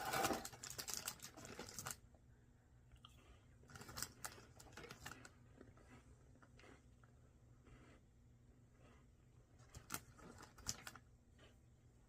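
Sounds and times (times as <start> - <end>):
crackers crunching: 0.0 - 2.0, 3.6 - 7.1, 9.6 - 11.0
snack wrapper crinkling: 0.0 - 2.0, 3.7 - 5.7, 9.6 - 11.0.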